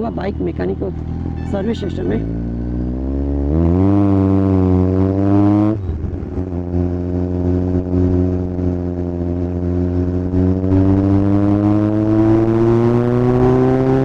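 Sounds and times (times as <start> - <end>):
motorcycle engine and exhaust: 0.0 - 14.0.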